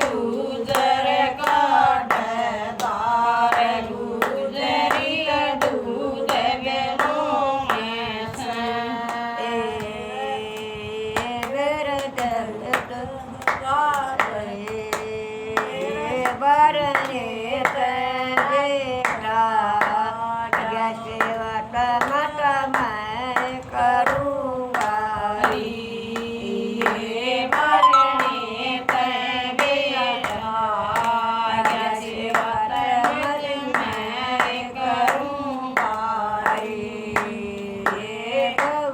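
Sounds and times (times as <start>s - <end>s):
hand claps: 0.0s - 21.4s, 22.0s - 38.8s
person singing unaccompanied: 27.5s - 29.8s.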